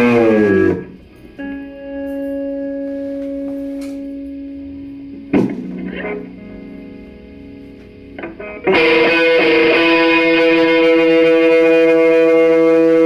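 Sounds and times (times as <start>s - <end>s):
electric guitar notes: 0.0s - 13.0s.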